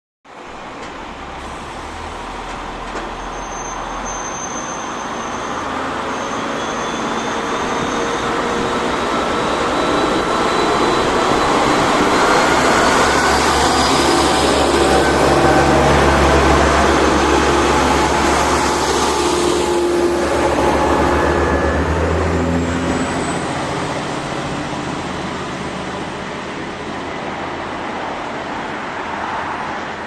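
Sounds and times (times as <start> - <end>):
diesel railcar engine under load: 0.3 - 30.0
faint high whine: 19.4 - 24.7.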